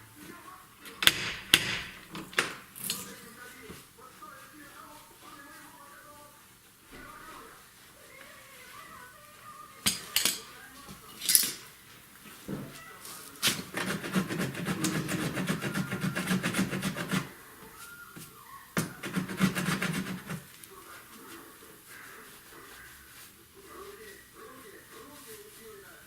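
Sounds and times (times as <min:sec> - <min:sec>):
sanding strokes on car panel: 0:13.6 - 0:17.4, 0:18.8 - 0:20.5.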